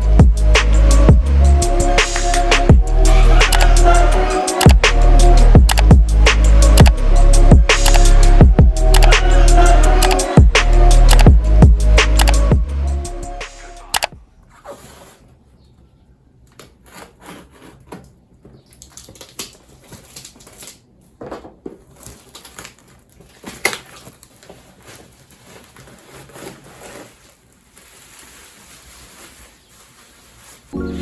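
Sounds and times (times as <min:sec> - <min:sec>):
packaging rustling and crinkling: 0:16.8 - 0:30.8.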